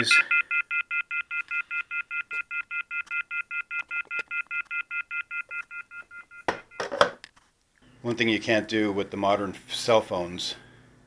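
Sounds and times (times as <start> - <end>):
phone off-hook beeping tone: 0.0 - 7.0.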